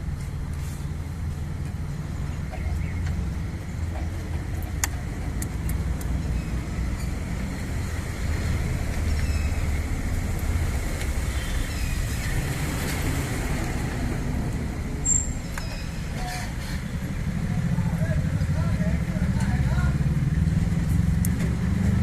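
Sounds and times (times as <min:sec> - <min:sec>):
car road and engine rumble: 0:00.0 - 0:22.0.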